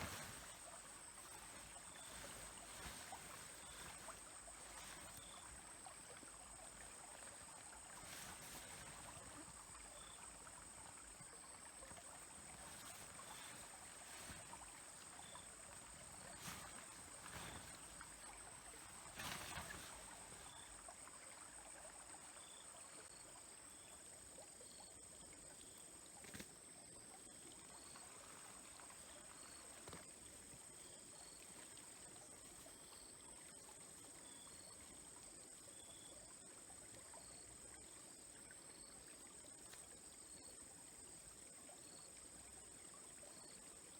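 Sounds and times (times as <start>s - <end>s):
faint chirps: 0.0s - 21.0s
small stream trickling: 0.0s - 43.9s.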